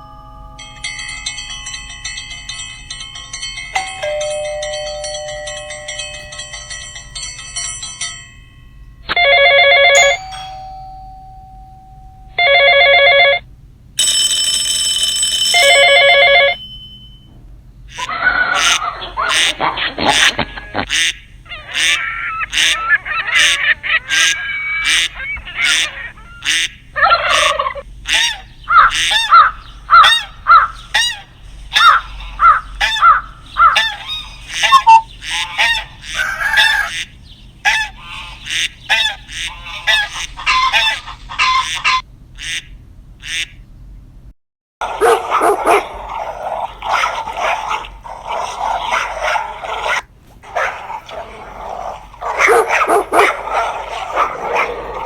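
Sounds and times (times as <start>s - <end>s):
birds honking calls: 17.9s - 43.7s, 44.8s - 55.0s
dog barking: 27.0s - 36.9s, 37.6s - 38.1s, 38.9s - 42.0s, 44.8s - 55.0s.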